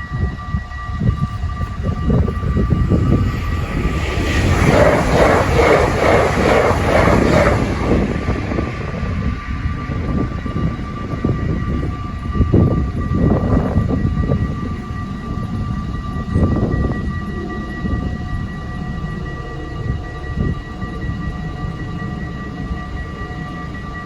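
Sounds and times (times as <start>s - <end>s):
crossing bells ringing: 0.0s - 24.0s
passenger train rumbling past: 0.0s - 24.0s.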